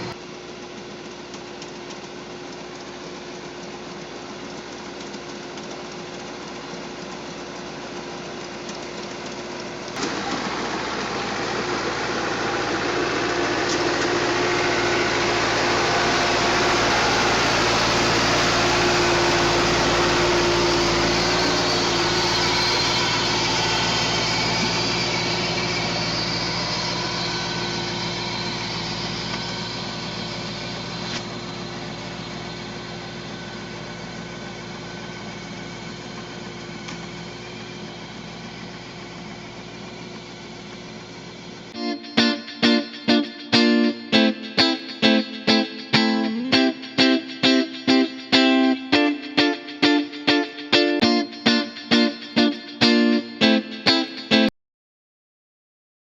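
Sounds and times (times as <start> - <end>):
pruning machine engine running: 3.4 - 41.8.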